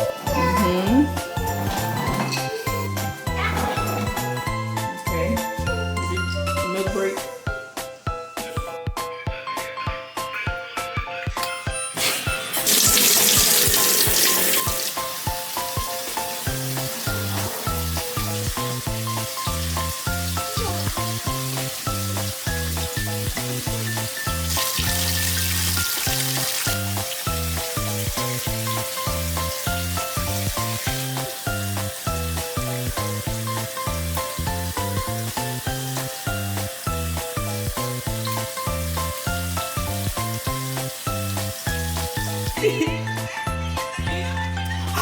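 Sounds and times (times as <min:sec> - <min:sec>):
background music with a beat: 0:00.0 - 0:16.3.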